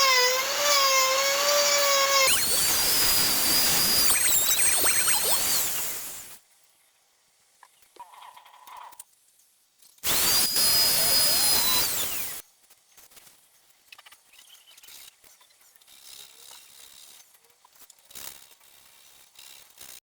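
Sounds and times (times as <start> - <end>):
power drill cutting wood: 0.0 - 6.4, 10.0 - 12.4.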